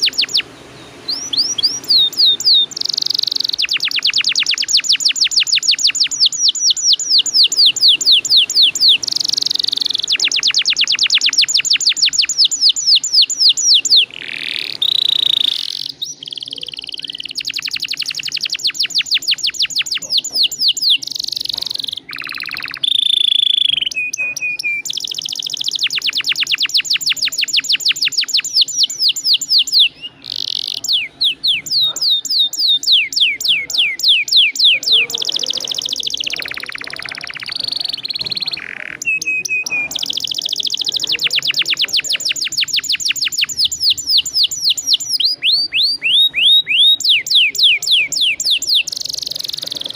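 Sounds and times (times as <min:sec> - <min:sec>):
canary singing trills: 0:00.0 - 0:49.9.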